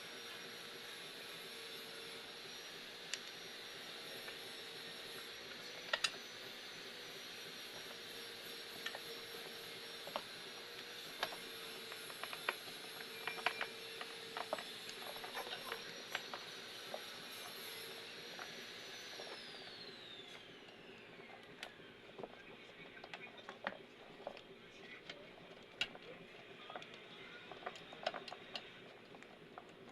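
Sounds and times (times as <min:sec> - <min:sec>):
steady high whine: 0:00.0 - 0:29.9
clicks and taps of small tools: 0:12.0 - 0:16.4.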